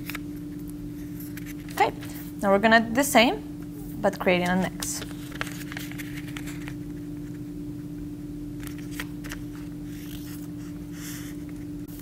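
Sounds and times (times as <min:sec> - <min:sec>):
low electrical hum: 0:00.0 - 0:12.0
paper rustling and crinkling: 0:04.4 - 0:06.8, 0:08.6 - 0:10.6.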